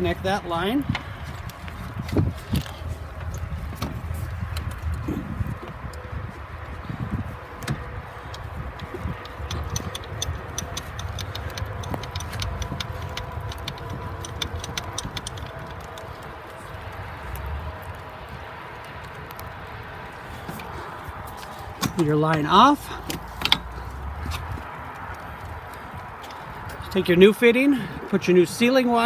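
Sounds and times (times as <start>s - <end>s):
low steady hum: 0.0s - 18.3s
ratchet wrench clicking: 8.3s - 16.1s.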